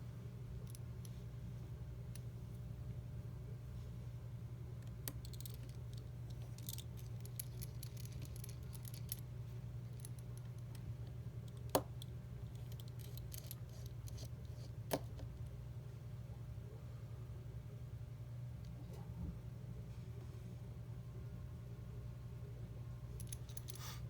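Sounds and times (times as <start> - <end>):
steady low hum: 0.0 - 24.0
small metal tools clicking: 4.8 - 9.2, 12.5 - 14.3.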